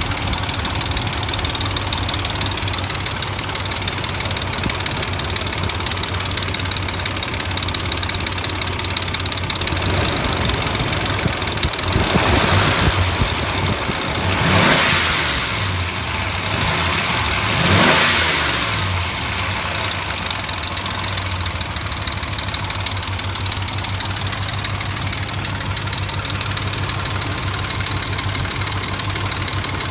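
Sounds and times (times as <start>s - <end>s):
engine idling with ticking knock: 0.0s - 29.9s
engine revving: 8.7s - 29.9s.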